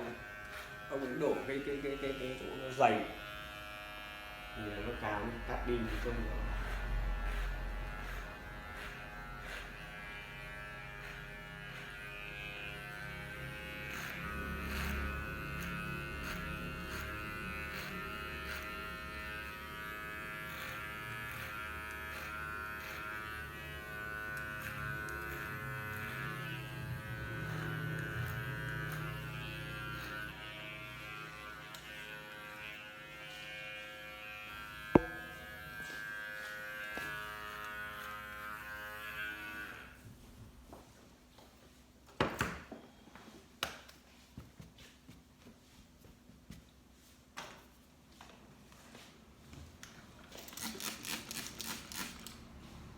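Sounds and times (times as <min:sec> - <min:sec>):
electric hair clipper buzzing: 0:00.0 - 0:40.0, 0:50.4 - 0:52.6.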